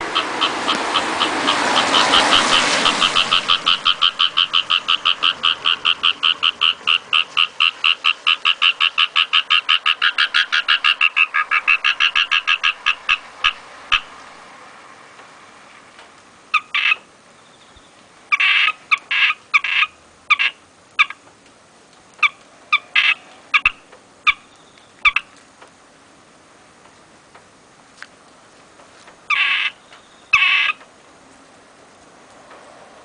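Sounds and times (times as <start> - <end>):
animal calling shrilly: 0.1 - 14.1, 16.5 - 17.0, 18.3 - 21.2, 22.2 - 25.3, 29.3 - 30.8.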